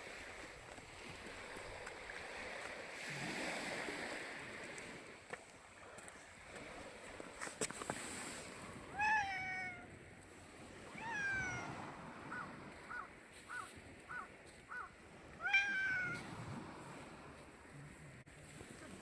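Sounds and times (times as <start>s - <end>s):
cat meowing: 8.9s - 9.9s, 11.0s - 11.8s, 15.4s - 16.2s.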